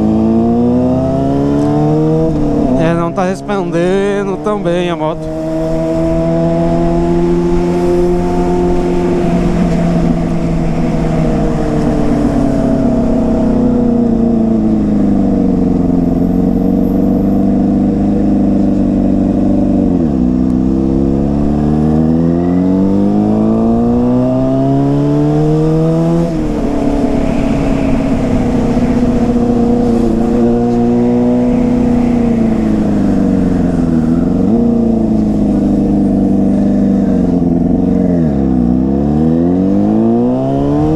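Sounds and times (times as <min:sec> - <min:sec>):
motorcycle engine on the road: 0:00.0 - 0:40.9.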